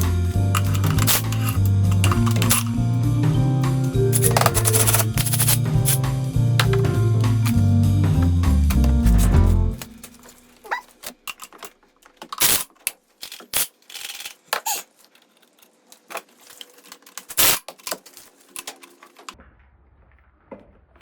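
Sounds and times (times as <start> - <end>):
ratchet clicking: 0.0 - 2.7, 4.1 - 6.8, 12.4 - 14.8
metal tools knocking: 0.5 - 2.8, 4.1 - 10.4.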